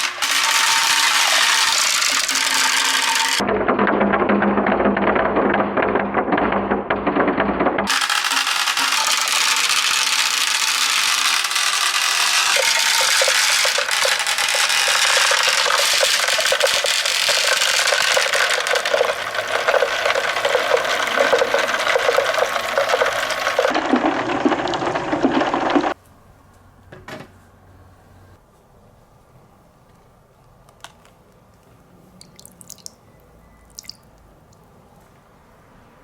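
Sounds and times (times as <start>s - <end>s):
plastic balls clattering down slide: 0.0s - 26.0s.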